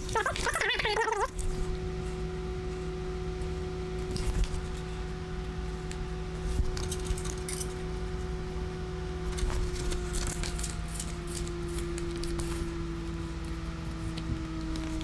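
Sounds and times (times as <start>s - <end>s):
steady electrical hum: 0.0s - 15.0s
cables and plastic connectors clicking: 9.3s - 15.0s.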